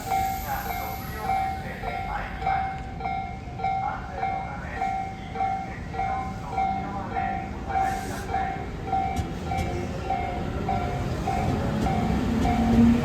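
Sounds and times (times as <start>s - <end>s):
electric train rumble: 0.0s - 2.9s, 5.7s - 13.0s.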